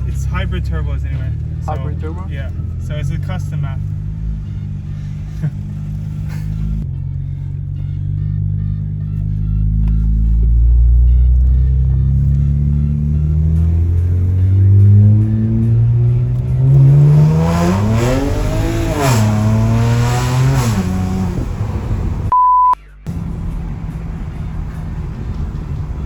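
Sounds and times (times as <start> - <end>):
car engine accelerating hard: 0.0 - 22.3, 23.1 - 26.0
censor bleep: 22.3 - 23.0.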